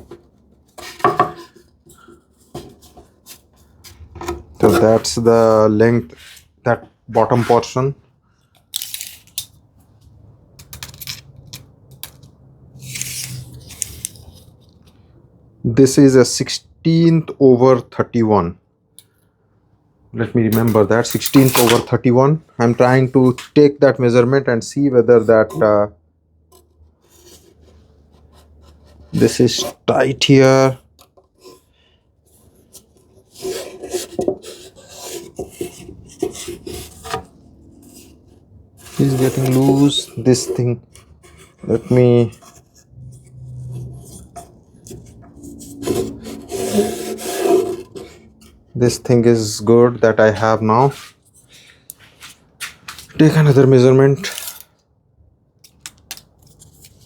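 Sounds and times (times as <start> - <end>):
measuring tools scraping: 4.6 - 6.5, 7.2 - 7.8, 12.8 - 15.0, 26.5 - 30.8, 32.3 - 54.7.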